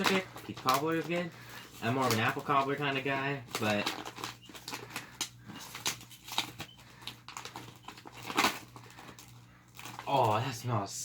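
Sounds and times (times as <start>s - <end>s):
plastic packaging crinkling: 0.0s - 10.9s.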